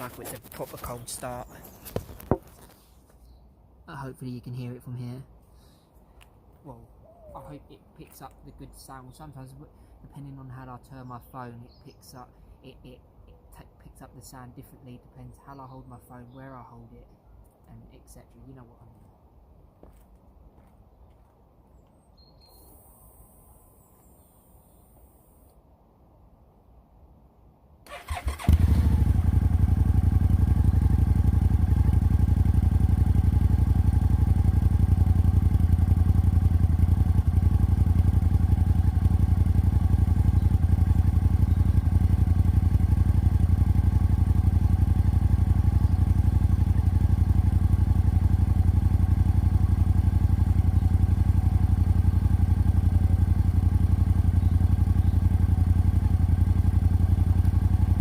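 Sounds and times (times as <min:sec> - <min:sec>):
motorcycle engine idling: 0:27.9 - 0:58.0.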